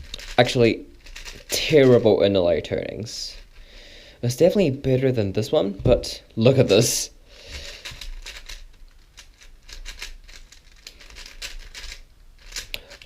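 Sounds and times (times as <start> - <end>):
plastic puzzle cube clicking: 7.7 - 13.0.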